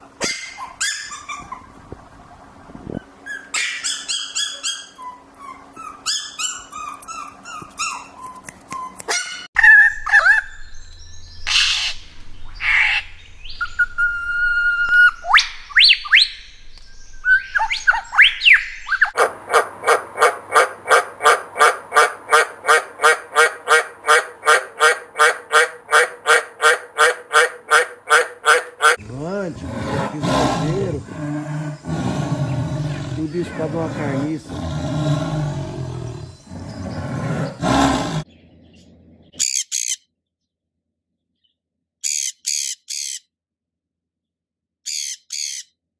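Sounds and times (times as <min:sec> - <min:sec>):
chirping animal calls: 0:00.0 - 0:40.0
gliding whistled calls: 0:08.2 - 0:19.2
animal calling repeatedly: 0:17.4 - 0:38.3.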